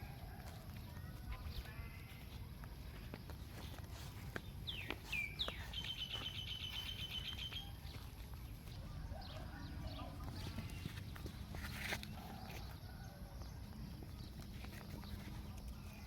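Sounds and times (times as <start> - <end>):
bird whistling and trilling: 4.7 - 7.7.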